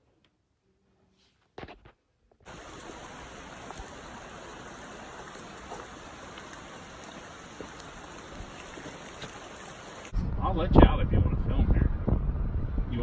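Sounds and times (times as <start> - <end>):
rain hissing: 2.5 - 10.2
raindrop ticks: 2.5 - 10.2.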